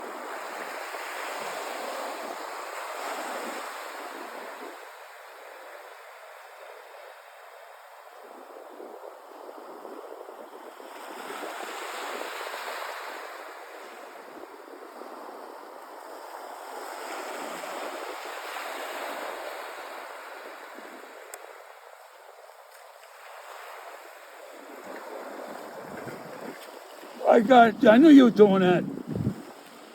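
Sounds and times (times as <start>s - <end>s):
ocean surf washing ashore: 10.8s - 29.9s
ocean surf breaking: 23.4s - 29.9s.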